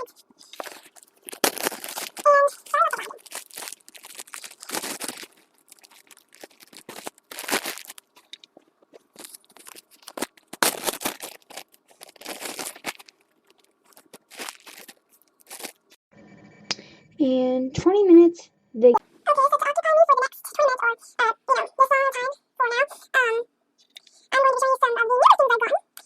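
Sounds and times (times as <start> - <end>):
plastic bags crinkling: 0.1 - 16.0.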